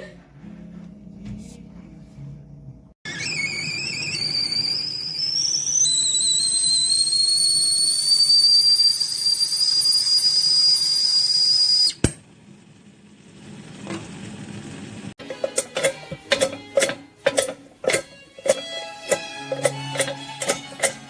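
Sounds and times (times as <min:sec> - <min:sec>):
kettle whistling: 0:03.1 - 0:12.1, 0:15.2 - 0:21.0.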